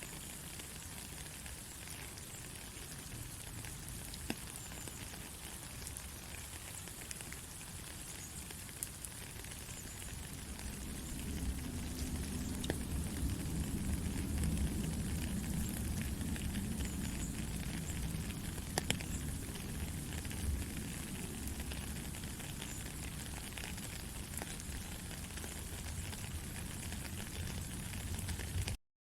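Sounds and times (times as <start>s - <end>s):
rain pattering: 0.0s - 28.8s
low rumble: 10.2s - 21.7s.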